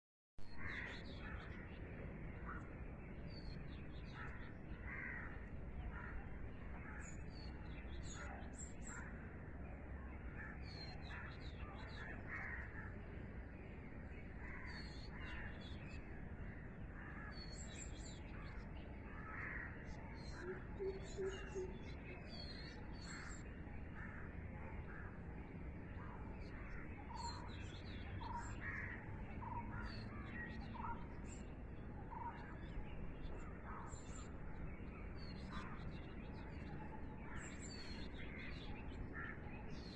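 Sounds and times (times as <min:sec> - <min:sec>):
birds calling: 0:16.5 - 0:39.9.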